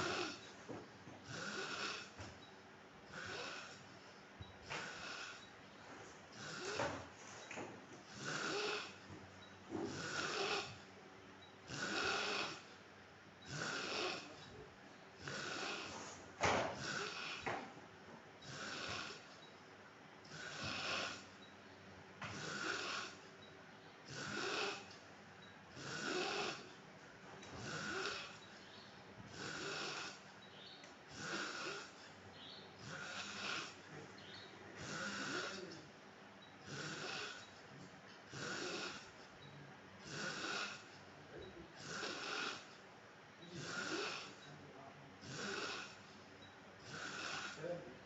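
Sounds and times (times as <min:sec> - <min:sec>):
man snoring: 0:00.0 - 0:00.5, 0:01.2 - 0:02.2, 0:03.1 - 0:03.8, 0:04.7 - 0:05.4, 0:06.4 - 0:07.0, 0:08.1 - 0:09.1, 0:09.7 - 0:10.8, 0:11.6 - 0:12.8, 0:13.5 - 0:14.6, 0:15.2 - 0:17.7, 0:18.4 - 0:19.3, 0:20.3 - 0:21.4, 0:22.3 - 0:23.3, 0:24.1 - 0:25.0, 0:25.7 - 0:26.8, 0:27.5 - 0:28.4, 0:29.3 - 0:30.2, 0:31.1 - 0:32.1, 0:32.8 - 0:34.1, 0:34.7 - 0:35.8, 0:36.6 - 0:37.5, 0:38.3 - 0:39.2, 0:40.0 - 0:42.7, 0:43.4 - 0:44.4, 0:45.2 - 0:46.2, 0:46.8 - 0:47.8.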